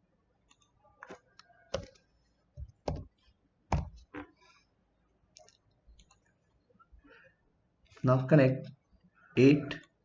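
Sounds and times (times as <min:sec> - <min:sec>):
mouse and keyboard clicks: 0:00.4 - 0:03.1, 0:05.3 - 0:06.4.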